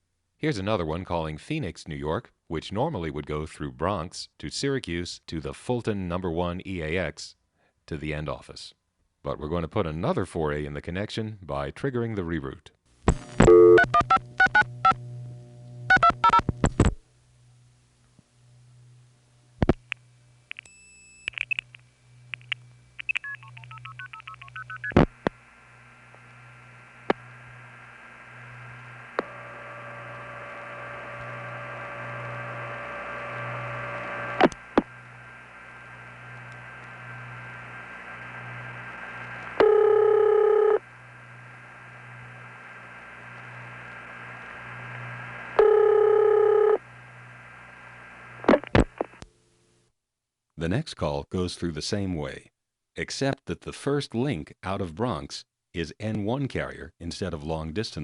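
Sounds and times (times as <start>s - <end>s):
steady low hum: 13.1s - 49.8s
loud telephone tone: 13.4s - 15.0s, 15.9s - 16.4s, 23.0s - 25.1s, 39.6s - 40.9s, 45.6s - 46.9s
high supervisory tone: 25.8s - 46.0s.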